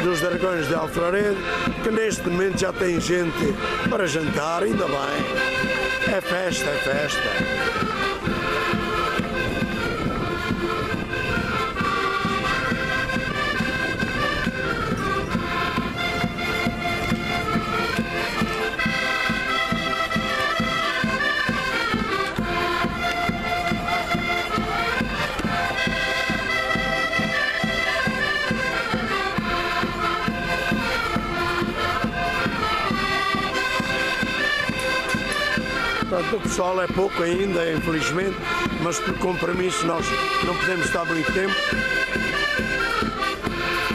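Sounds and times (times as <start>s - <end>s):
reedy folk melody: 0.0s - 43.9s.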